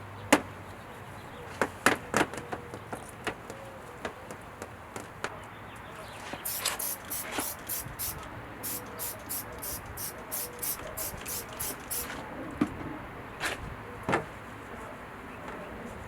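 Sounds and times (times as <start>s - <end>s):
spray bottle hissing sprays: 6.4s - 12.2s.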